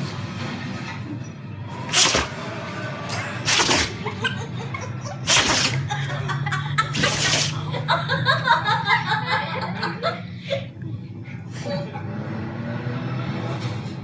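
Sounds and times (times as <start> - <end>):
dog sneezing: 1.9 - 2.4, 3.1 - 4.4, 5.2 - 6.2, 6.9 - 7.7.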